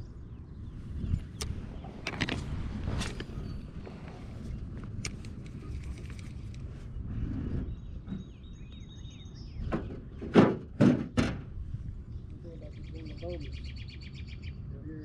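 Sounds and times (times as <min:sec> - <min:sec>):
bird singing faintly: 0:00.0 - 0:10.3, 0:12.0 - 0:15.0
wind rumble on microphone: 0:00.0 - 0:15.0
loud thunks: 0:09.6 - 0:11.6.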